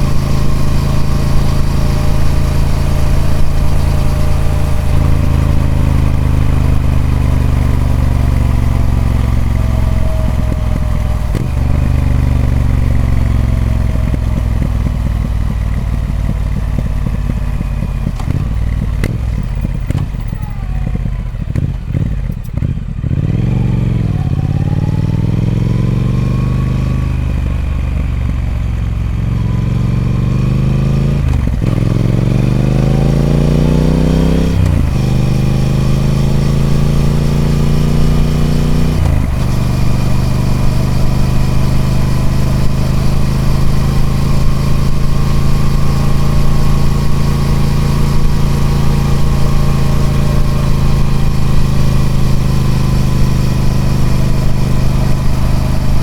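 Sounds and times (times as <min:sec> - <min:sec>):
gear change: 0:00.0 - 0:23.0
motorcycle engine revving: 0:00.0 - 0:56.0.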